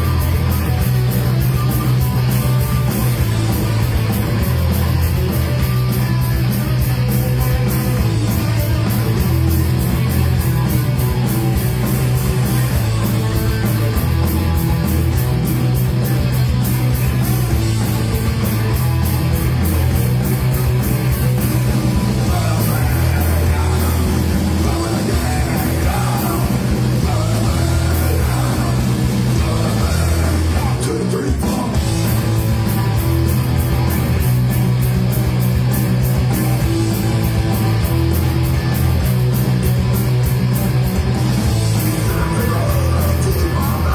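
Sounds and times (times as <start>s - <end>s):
live rock band playing: 0.0s - 43.9s.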